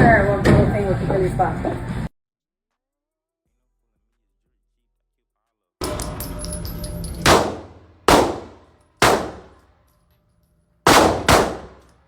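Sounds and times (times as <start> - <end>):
gunshots with ringing echo: 5.8 - 9.6, 10.9 - 12.0.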